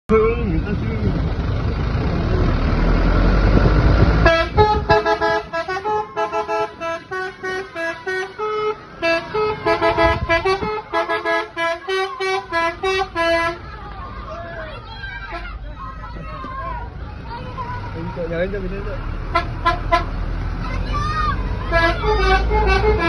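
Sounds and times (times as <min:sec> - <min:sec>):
bus engine and road noise: 0:00.0 - 0:23.0
bus musical horn tune: 0:04.2 - 0:13.6, 0:19.2 - 0:20.2, 0:21.6 - 0:23.0.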